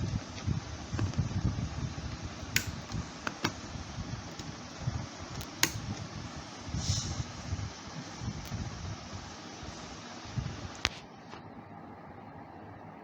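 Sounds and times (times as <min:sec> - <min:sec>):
microphone handling rumble: 0:00.0 - 0:09.1
computer parts clicking: 0:05.4 - 0:05.9.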